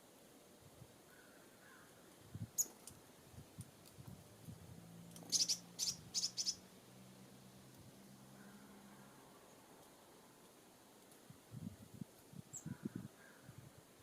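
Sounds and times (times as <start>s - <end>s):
songbird chirping: 1.0s - 3.2s, 4.5s - 10.8s, 12.5s - 13.6s.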